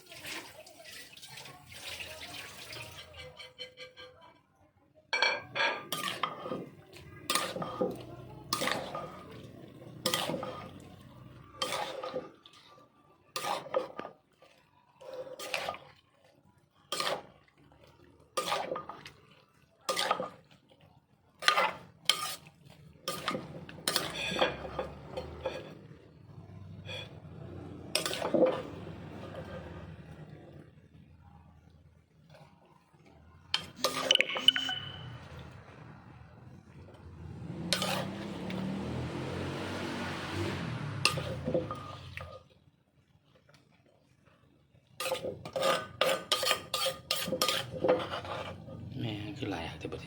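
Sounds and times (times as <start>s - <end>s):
kitchen utensils clinking: 0.1s - 4.4s, 5.1s - 12.4s, 23.0s - 25.9s, 26.7s - 30.0s, 33.6s - 35.6s, 37.0s - 38.8s, 40.5s - 42.4s, 45.0s - 48.9s
utensils scraping: 2.8s - 4.3s, 5.5s - 9.4s, 10.0s - 10.8s, 23.1s - 25.8s, 37.7s - 38.4s, 45.0s - 48.8s.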